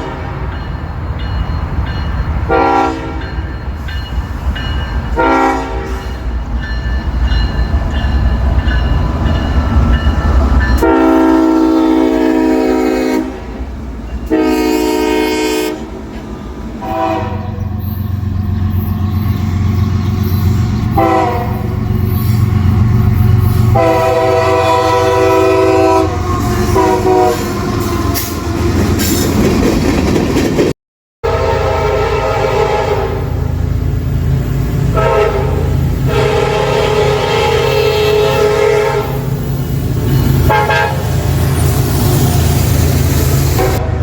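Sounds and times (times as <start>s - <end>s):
locomotive air horn chords: 0.0s - 0.4s, 2.5s - 3.4s, 5.2s - 6.2s, 10.8s - 13.6s, 14.3s - 16.0s, 16.8s - 17.8s, 20.9s - 21.8s, 23.6s - 28.6s, 31.2s - 33.6s, 34.9s - 39.4s, 40.4s - 41.2s, 43.4s - 44.0s
diesel locomotive engine rumble: 0.0s - 44.0s
train wheels running: 17.6s - 24.7s, 26.1s - 30.7s.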